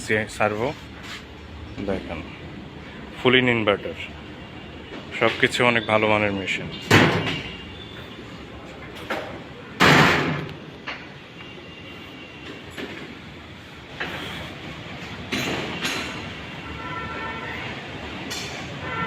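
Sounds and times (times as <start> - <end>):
steady background noise: 0.0 - 19.0
knocks and clanks: 6.8 - 7.6, 8.9 - 11.2, 15.0 - 16.4.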